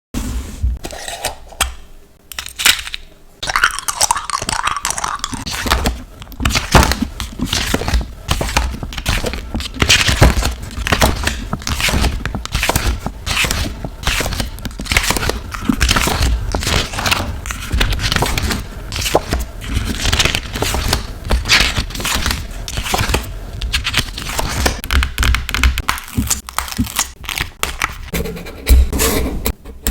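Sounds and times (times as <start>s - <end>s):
stickers peeling and crinkling: 4.3s - 28.1s.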